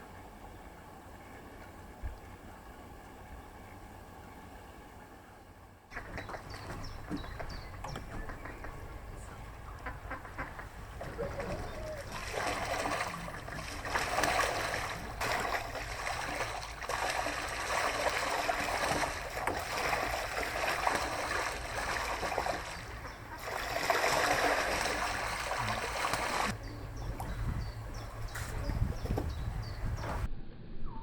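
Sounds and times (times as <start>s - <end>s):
water splashing and churning: 5.9s - 28.8s.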